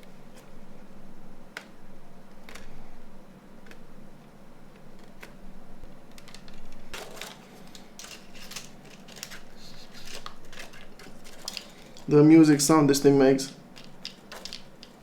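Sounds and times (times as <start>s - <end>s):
small parts clicking and scraping: 2.4s - 2.8s, 6.1s - 12.2s, 13.4s - 15.0s.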